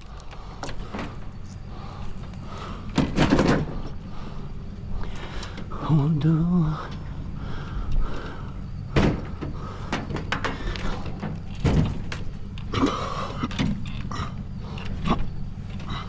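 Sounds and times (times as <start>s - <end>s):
steady low hum: 0.0s - 16.0s
sharp knocks and clanks: 2.9s - 4.0s, 8.9s - 12.4s.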